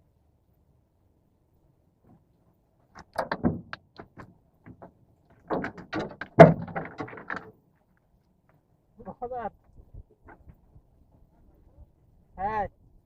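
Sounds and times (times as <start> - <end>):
knocks and thumps: 3.0 - 7.5.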